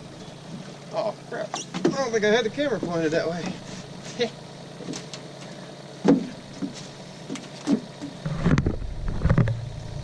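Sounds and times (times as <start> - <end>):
thumps and knocks in boat: 1.5 - 2.1, 4.8 - 5.2, 6.0 - 9.6
low rumble: 8.2 - 10.0.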